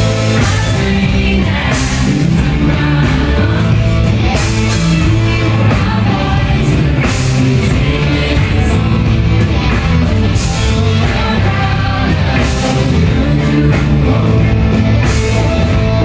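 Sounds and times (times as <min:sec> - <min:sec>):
live rock band with singing: 0:00.0 - 0:16.0.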